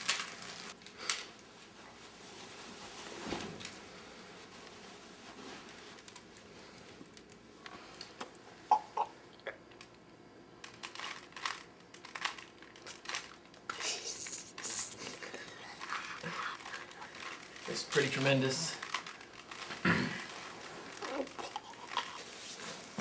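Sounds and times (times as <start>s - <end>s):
plastic cube clicks and rustles: 0.0s - 1.3s, 10.6s - 13.8s, 15.8s - 22.2s.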